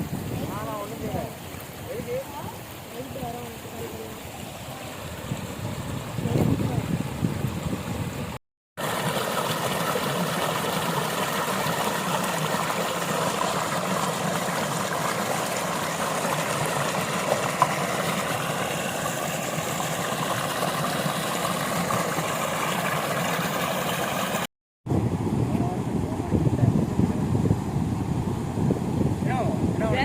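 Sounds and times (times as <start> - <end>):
rainwater rushing: 0.0 - 7.3, 8.8 - 24.5.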